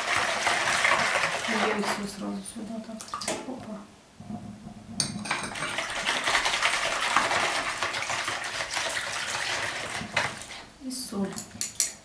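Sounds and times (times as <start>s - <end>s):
water pouring into a bowl: 0.0s - 2.2s, 5.4s - 10.7s.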